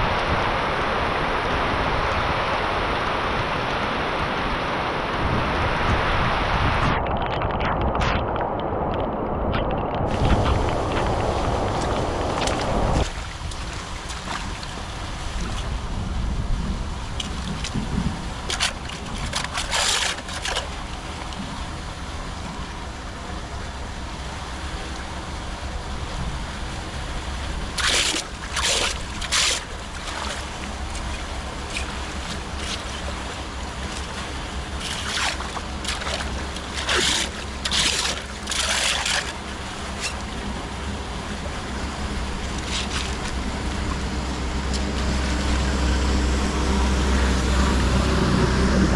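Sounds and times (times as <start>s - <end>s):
water splashing: 0.0s - 15.9s, 17.0s - 22.8s, 24.2s - 48.9s
floodwater running and sloshing: 0.0s - 48.9s
wind rumble on microphone: 0.0s - 48.9s.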